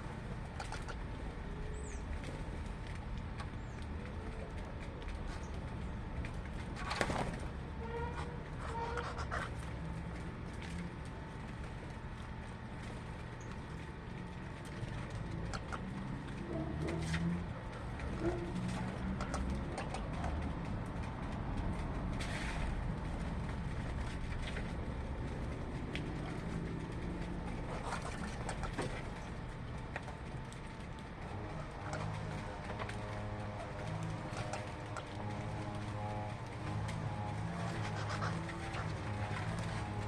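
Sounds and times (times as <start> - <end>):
steady low rumble: 0.0 - 40.0
birds calling: 0.5 - 2.2.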